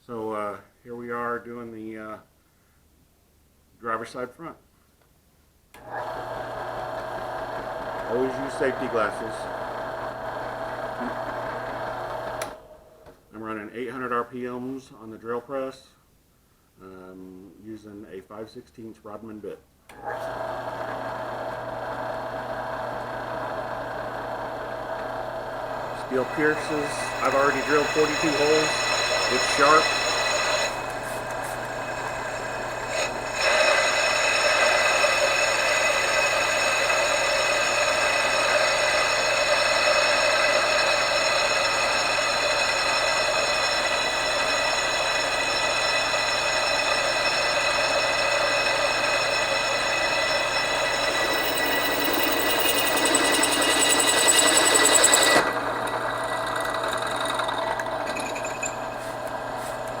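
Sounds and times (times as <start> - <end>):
drill press whining: 5.8 - 12.8, 19.9 - 60.0.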